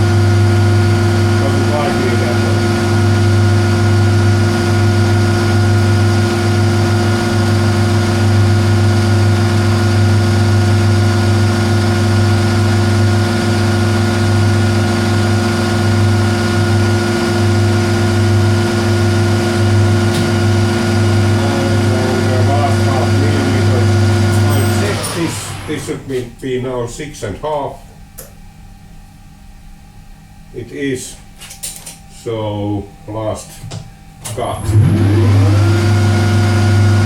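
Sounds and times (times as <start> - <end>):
metal lathe turning: 20.4 - 26.0.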